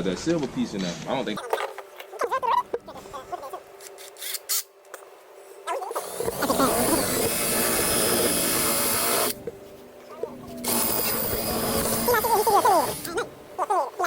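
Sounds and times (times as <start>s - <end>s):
power drill running: 6.0s - 9.4s, 10.6s - 13.2s.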